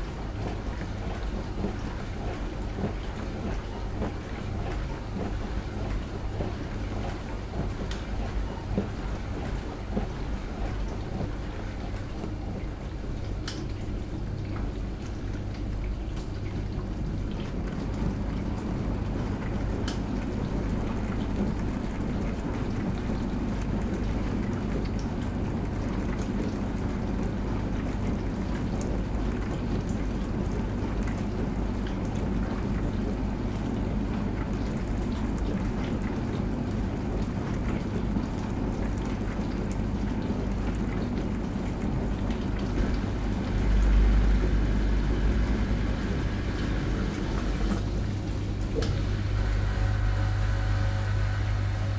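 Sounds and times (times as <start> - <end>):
dishwasher motor hum: 0.0 - 51.9
water spraying inside dishwasher: 15.6 - 51.9.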